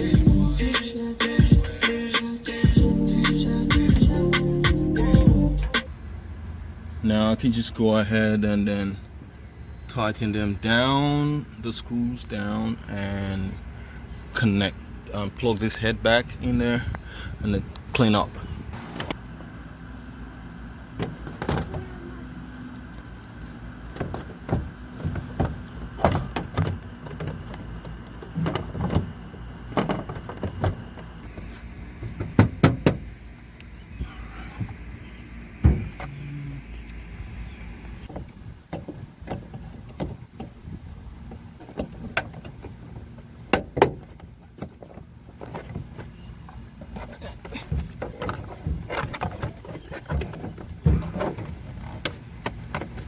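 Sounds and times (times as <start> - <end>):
low steady hum: 0.0 - 7.6, 8.9 - 42.1.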